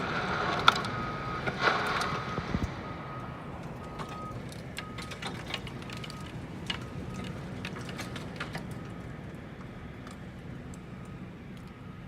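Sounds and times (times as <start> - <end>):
faint beeping tone: 2.0 - 5.3, 10.9 - 12.0.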